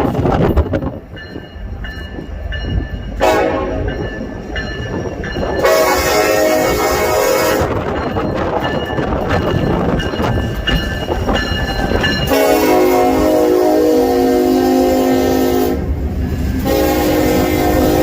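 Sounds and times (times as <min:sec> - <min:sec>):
freight train rumbling: 0:00.0 - 0:18.0
locomotive air horn: 0:03.2 - 0:03.9, 0:05.6 - 0:07.8, 0:12.3 - 0:15.9, 0:16.6 - 0:18.0.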